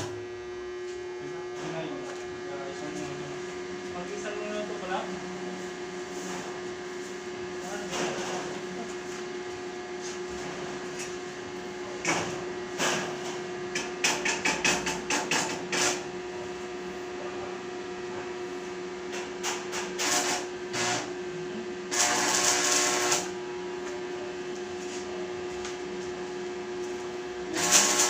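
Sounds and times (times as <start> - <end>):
welding machine humming: 2.6 - 17.0, 18.5 - 28.0
arc welding crackling: 19.4 - 21.1, 21.9 - 23.4, 27.5 - 28.0.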